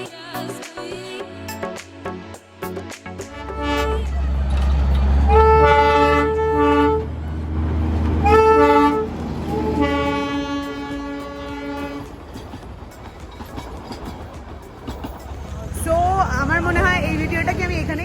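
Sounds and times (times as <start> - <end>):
train horn blasts: 3.3 - 7.2, 8.0 - 12.2
low engine rumble: 3.3 - 18.0.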